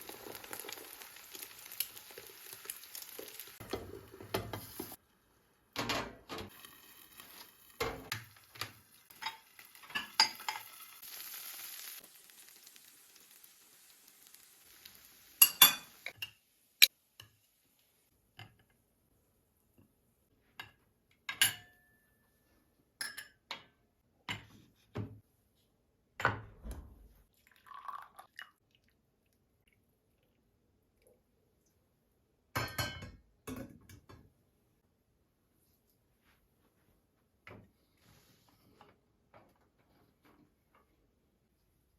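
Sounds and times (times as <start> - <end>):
dishes and utensils clinking: 7.8 - 10.8, 15.4 - 16.4, 20.6 - 21.9, 32.6 - 34.2.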